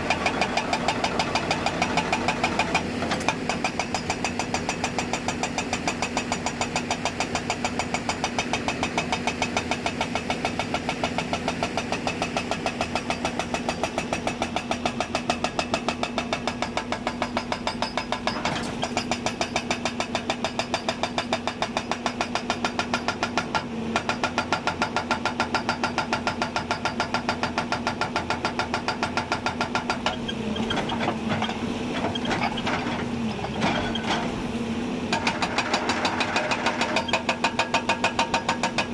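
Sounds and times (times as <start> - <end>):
hydraulic breaker hammering: 35.1 - 38.9.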